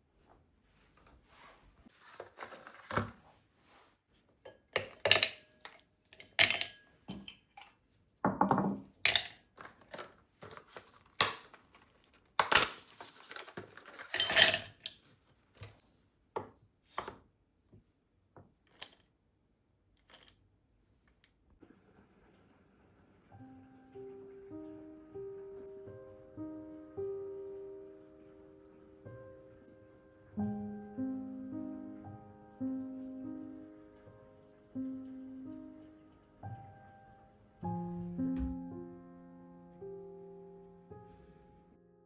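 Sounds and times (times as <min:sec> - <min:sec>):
dishes and utensils clinking: 0:04.4 - 0:11.8, 0:12.4 - 0:15.1.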